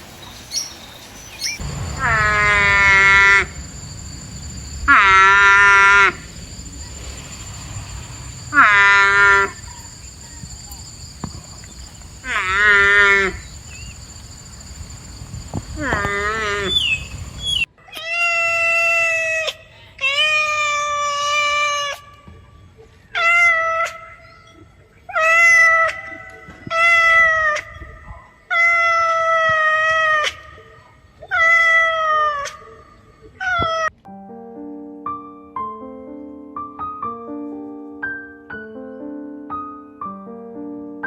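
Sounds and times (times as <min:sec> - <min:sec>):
soft piano music: 0:34.0 - 0:41.0.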